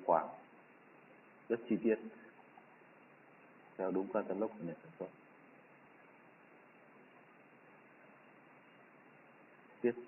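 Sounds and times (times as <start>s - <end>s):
man speaking: 0.0s - 0.4s, 1.5s - 2.2s, 3.8s - 5.2s.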